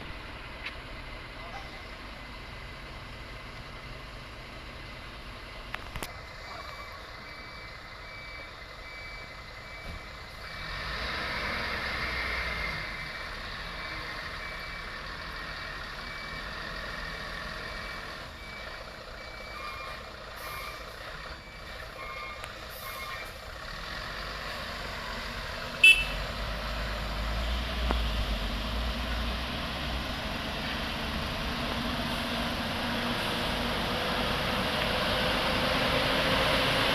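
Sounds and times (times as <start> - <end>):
heavy truck engine: 0.0 - 36.9
truck reversing alarm beeping: 6.2 - 11.2, 12.0 - 23.4, 24.8 - 26.9.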